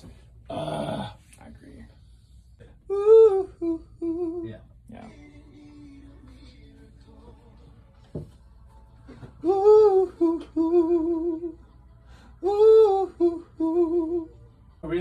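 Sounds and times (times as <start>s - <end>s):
person humming a melody: 2.9s - 6.2s, 9.4s - 11.6s, 12.4s - 14.4s.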